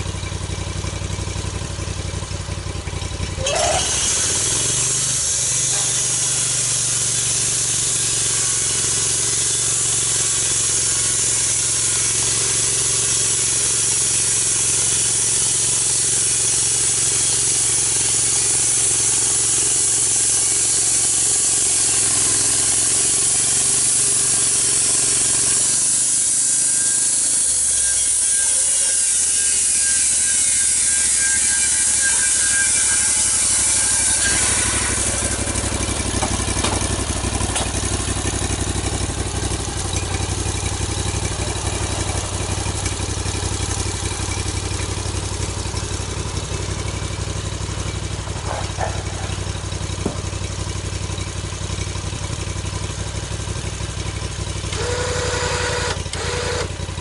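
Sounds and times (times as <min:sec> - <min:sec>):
sawmill engine drone: 0:00.0 - 0:57.0.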